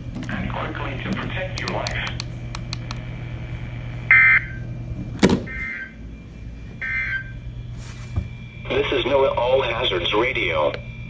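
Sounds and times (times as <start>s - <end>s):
steady low hum: 0.0s - 11.0s
faint clicks: 1.5s - 3.0s.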